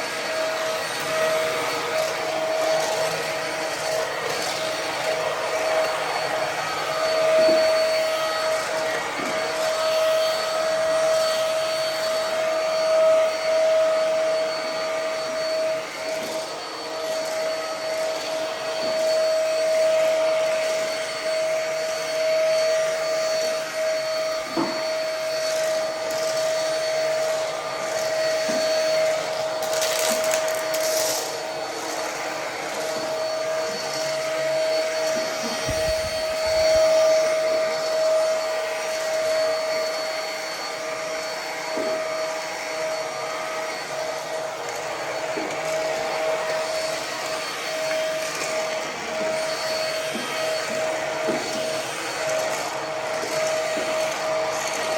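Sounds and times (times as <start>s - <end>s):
vacuum cleaner motor whine: 0.0s - 54.9s.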